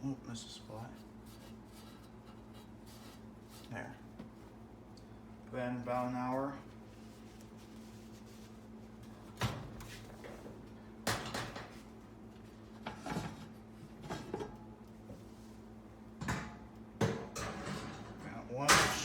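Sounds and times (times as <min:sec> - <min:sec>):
low steady hum: 0:00.0 - 0:19.0
oven door and racks clunking: 0:09.3 - 0:11.9, 0:16.2 - 0:19.0.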